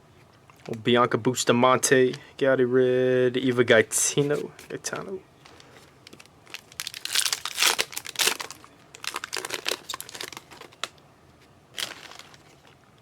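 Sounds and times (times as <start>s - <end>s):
card pack wrapper tearing and crinkling: 6.1s - 11.0s, 11.8s - 12.5s.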